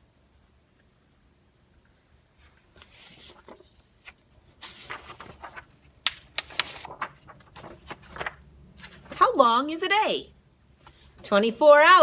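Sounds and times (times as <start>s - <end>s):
paper rustling and pages turning: 2.4s - 9.3s.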